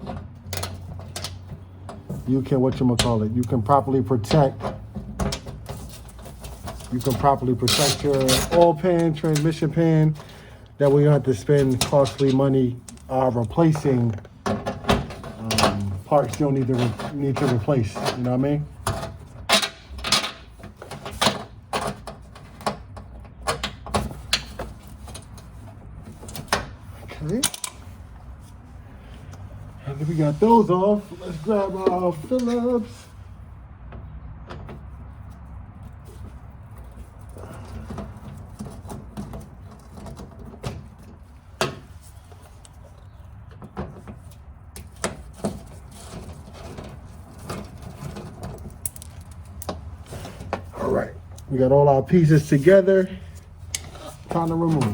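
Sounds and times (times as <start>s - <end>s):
hand tools clicking and knocking: 0.0s - 27.9s.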